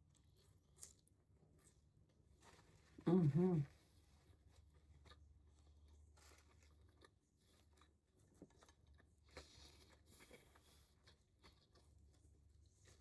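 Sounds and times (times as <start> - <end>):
person chewing: 4.7 - 13.0.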